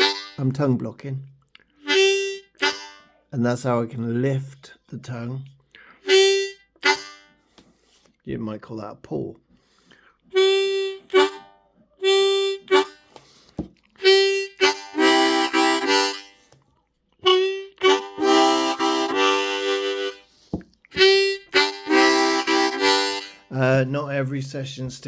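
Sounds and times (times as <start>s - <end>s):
harmonica riff: 0.0s - 0.6s, 1.7s - 3.3s, 5.8s - 7.6s, 10.2s - 16.5s, 17.2s - 23.9s.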